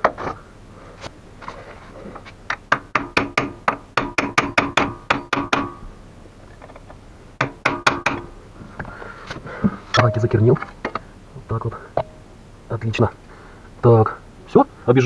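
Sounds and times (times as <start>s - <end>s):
hammer striking metal chisel: 2.7s - 5.9s, 7.4s - 8.3s, 10.0s - 10.6s, 12.0s - 12.2s.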